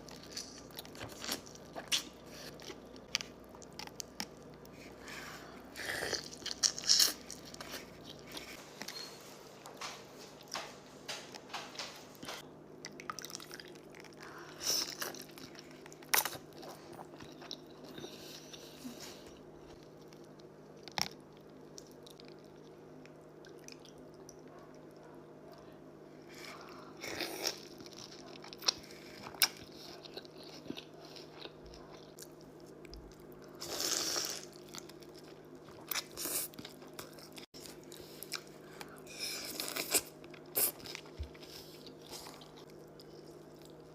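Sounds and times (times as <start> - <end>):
crunchy bites and chewing: 5.7 - 8.6.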